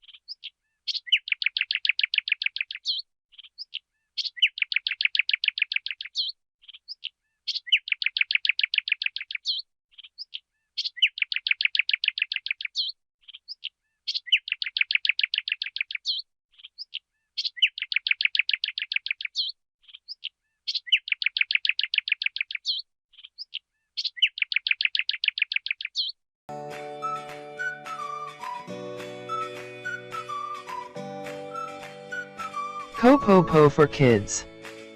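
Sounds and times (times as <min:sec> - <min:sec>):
sparrow singing: 0:00.0 - 0:26.2.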